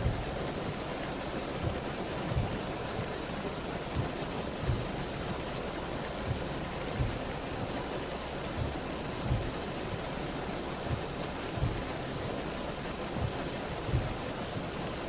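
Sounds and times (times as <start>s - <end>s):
heavy rain pouring: 0.0s - 15.0s
short low thumps: 1.6s - 3.1s, 6.2s - 7.8s, 8.5s - 9.7s, 10.9s - 12.0s, 13.1s - 14.3s.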